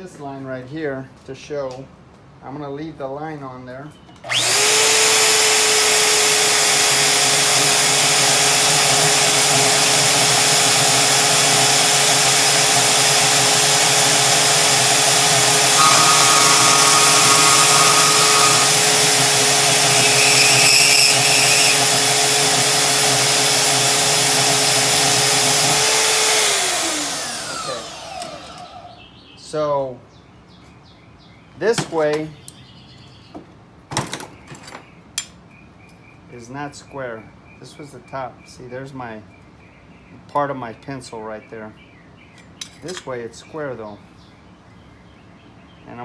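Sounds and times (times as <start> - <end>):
band saw whining: 4.3 - 28.9.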